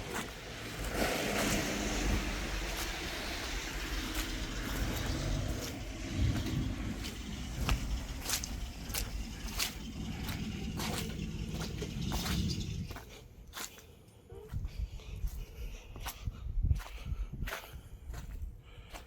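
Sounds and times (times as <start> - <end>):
car rumbling on slushy road: 0.0 - 13.3
footsteps crunching through snow: 0.0 - 16.2.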